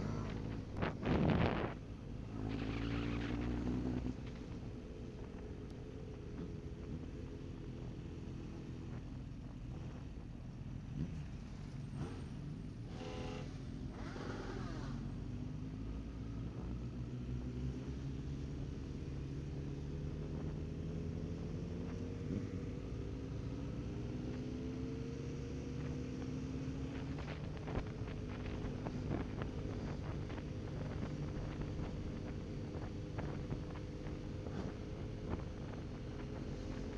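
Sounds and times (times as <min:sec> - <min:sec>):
motorcycle engine running: 0:00.0 - 0:15.2, 0:25.4 - 0:36.9.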